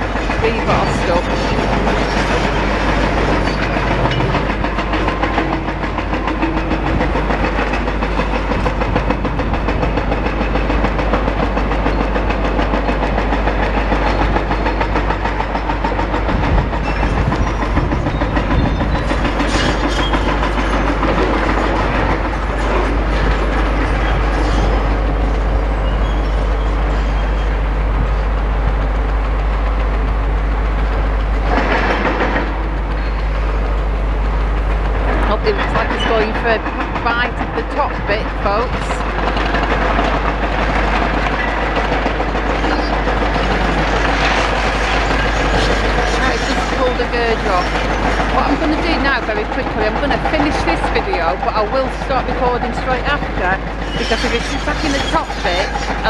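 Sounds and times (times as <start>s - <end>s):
excavator diesel engine under load: 0.0s - 56.0s
concrete clattering and crunching: 35.1s - 56.0s.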